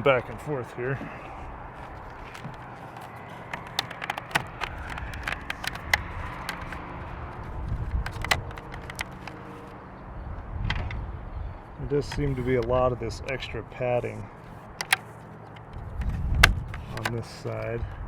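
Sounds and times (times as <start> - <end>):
plastic parts clicking: 1.8 - 9.6, 12.0 - 12.7, 14.5 - 17.7.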